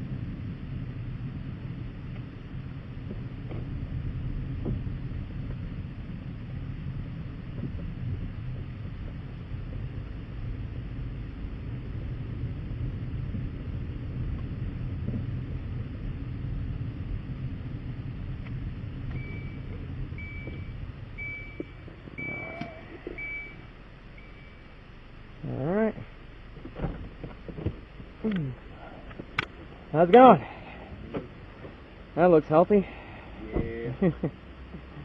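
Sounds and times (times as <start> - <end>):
vehicle engine and road noise: 0.0 - 35.0
reversing beeps: 19.1 - 23.6, 24.2 - 24.6.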